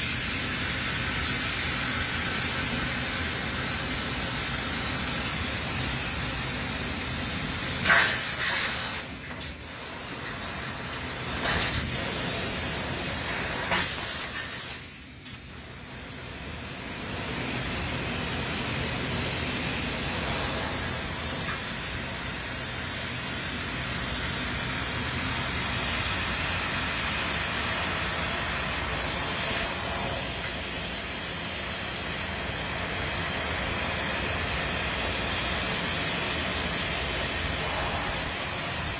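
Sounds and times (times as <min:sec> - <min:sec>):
factory machinery noise: 0:00.0 - 0:15.1, 0:16.5 - 0:38.9
continuous hiss: 0:00.0 - 0:38.9
short hissing bursts: 0:07.8 - 0:09.5, 0:11.4 - 0:15.4.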